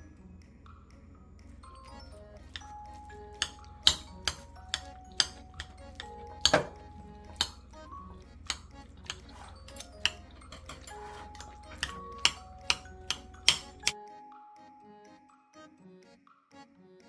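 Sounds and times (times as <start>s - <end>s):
soft background music: 0.0s - 17.0s
dishes and cutlery clinking: 2.4s - 7.7s, 8.4s - 14.0s.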